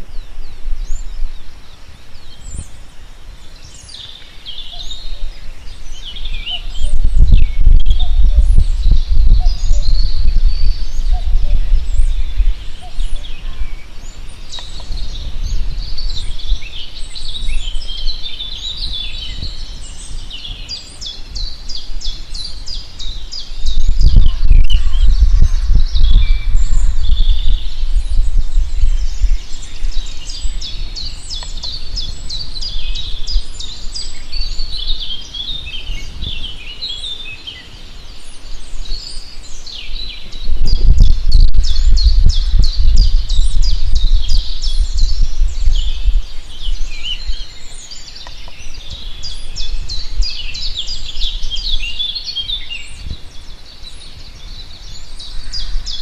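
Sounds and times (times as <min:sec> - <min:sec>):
songbirds chirping: 0:00.0 - 0:56.0
low rumble: 0:23.6 - 0:33.5.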